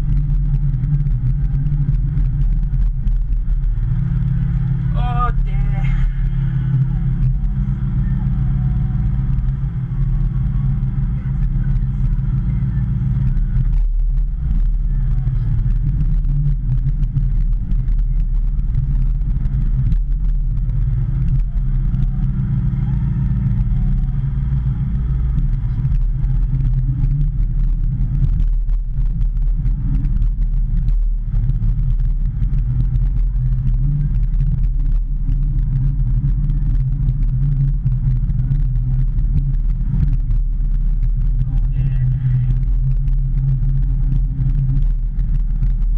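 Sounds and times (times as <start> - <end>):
excavator diesel engine drone: 0.0 - 45.9.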